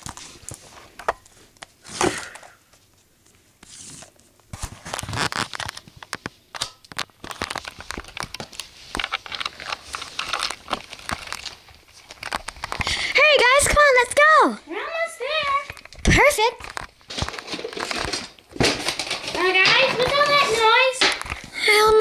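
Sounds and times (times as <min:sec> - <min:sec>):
plastic figurines clicking and tapping: 0:07.0 - 0:14.4, 0:15.4 - 0:22.0.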